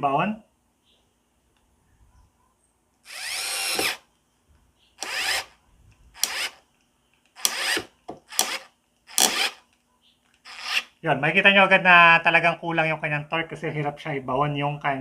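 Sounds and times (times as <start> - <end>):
electric screwdriver motor: 3.1 - 4.0, 5.0 - 5.6, 6.2 - 6.6, 7.4 - 9.6, 10.4 - 10.9.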